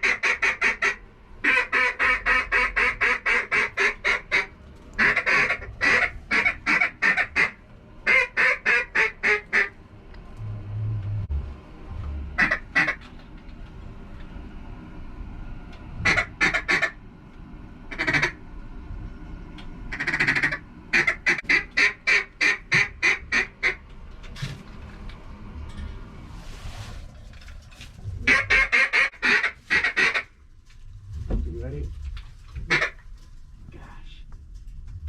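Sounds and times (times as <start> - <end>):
mallard quacking: 0.0 - 9.7, 12.4 - 13.0, 19.9 - 23.8, 28.2 - 30.3.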